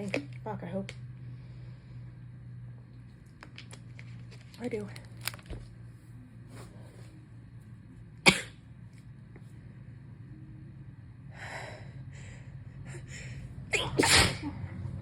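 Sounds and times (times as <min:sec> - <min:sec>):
woman sneezing: 0:13.7 - 0:14.6.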